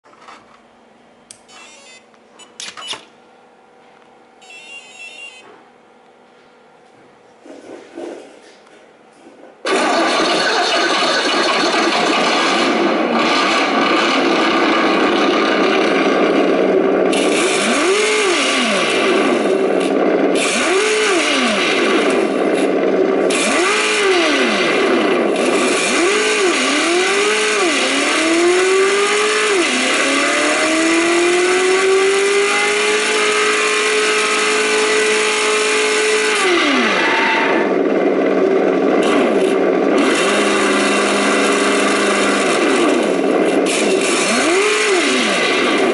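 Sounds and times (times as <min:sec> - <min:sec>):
simulated engine idling and revving: 0:09.7 - 0:45.9.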